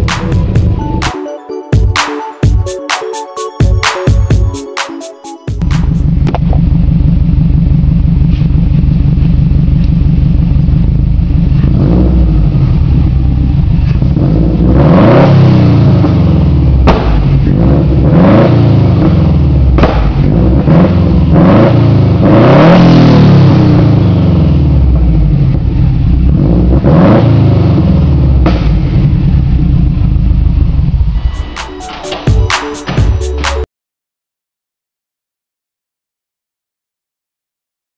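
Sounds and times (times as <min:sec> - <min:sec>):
car engine idling and revving: 0:05.6 - 0:31.5.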